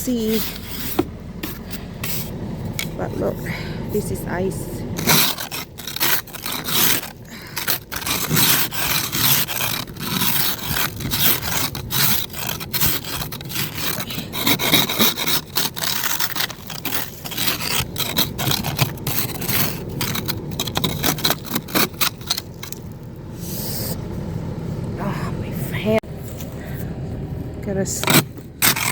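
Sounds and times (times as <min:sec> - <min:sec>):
ice scraped off car window: 0:00.0 - 0:03.0, 0:05.0 - 0:24.0, 0:27.9 - 0:28.9.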